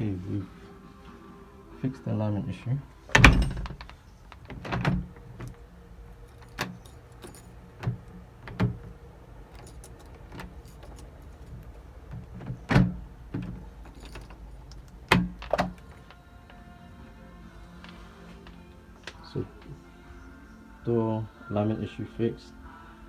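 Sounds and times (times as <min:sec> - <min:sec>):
key turning in door lock: 0:03.1 - 0:16.6
keys jangling: 0:03.1 - 0:16.8.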